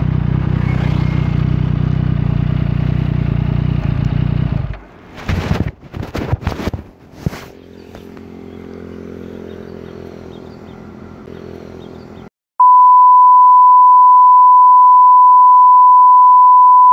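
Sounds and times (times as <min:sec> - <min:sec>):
motorcycle engine idling: 0:00.0 - 0:04.6, 0:07.5 - 0:12.3
loud steady beep: 0:12.6 - 0:16.9.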